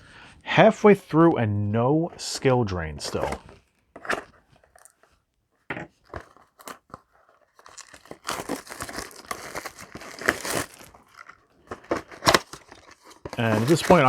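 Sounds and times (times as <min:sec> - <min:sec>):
foil pack crinkling and tearing: 0:06.2 - 0:14.0.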